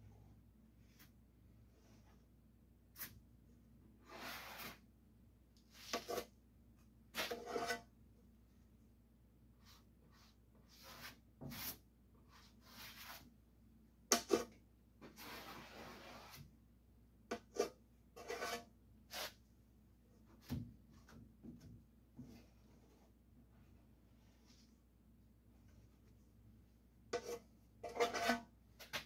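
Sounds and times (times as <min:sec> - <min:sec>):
hand rubs and scrapes: 0:09.6 - 0:13.3, 0:14.3 - 0:16.5, 0:22.2 - 0:24.9.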